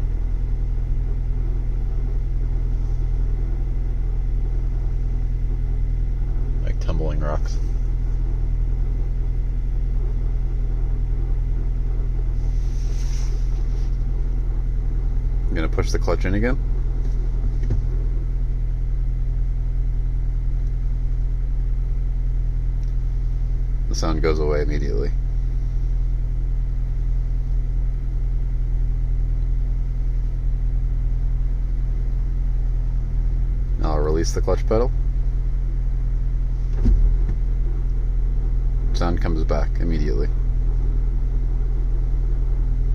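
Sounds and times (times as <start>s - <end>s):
car engine idling: 0.0s - 42.9s
transmission scraping grind: 1.4s - 8.9s, 9.6s - 18.6s, 22.8s - 26.2s, 36.4s - 42.6s.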